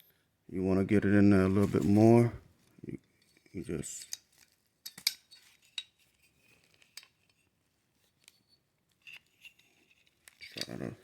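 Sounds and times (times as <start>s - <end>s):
metal parts clicking: 9.0s - 11.0s.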